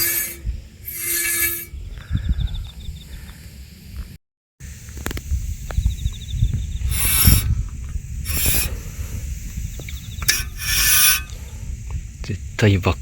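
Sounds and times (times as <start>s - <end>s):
brake rotor scraping against stone: 0.0s - 1.7s, 6.8s - 7.6s, 8.2s - 8.9s, 9.8s - 11.6s.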